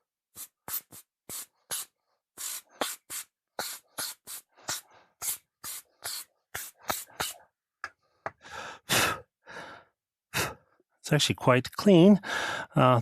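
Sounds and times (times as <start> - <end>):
compressed air hissing blasts: 0.3 - 7.4.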